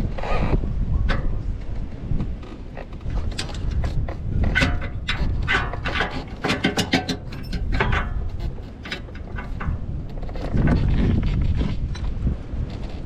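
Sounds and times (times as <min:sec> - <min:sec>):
metal tool clatter: 0:03.0 - 0:10.9.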